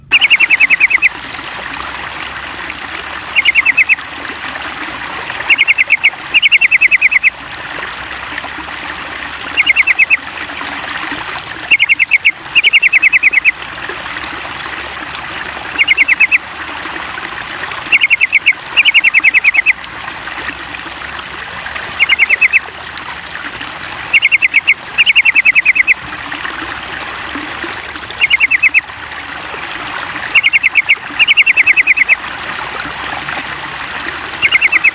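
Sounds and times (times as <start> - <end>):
bird chattering: 0.0 - 1.1, 3.4 - 4.0, 5.5 - 7.3, 9.6 - 10.2, 11.7 - 13.5, 15.8 - 16.4, 17.9 - 19.7, 22.0 - 22.6, 24.1 - 26.0, 28.2 - 28.8, 30.3 - 32.2, 34.4 - 34.9
running water trickling: 0.0 - 34.9.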